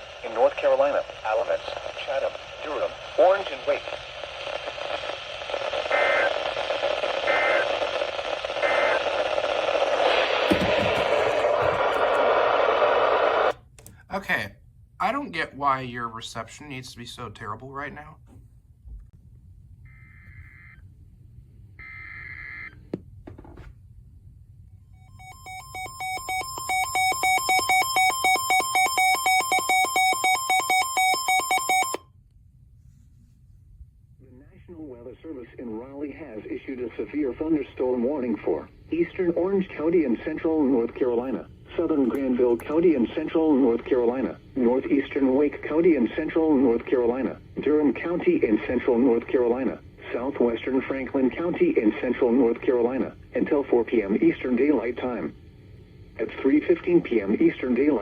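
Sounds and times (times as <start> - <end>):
radio static hiss: 0.0 - 13.6, 34.2 - 58.0
emergency alert tone alternating: 25.0 - 32.0.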